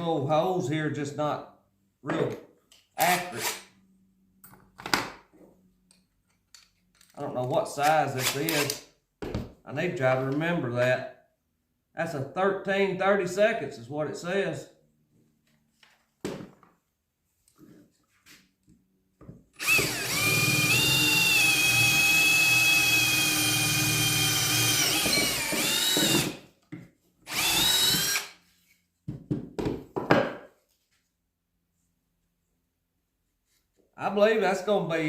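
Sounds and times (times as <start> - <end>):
power drill boring into wood: 3.0 - 3.6, 19.6 - 26.4, 27.3 - 28.4.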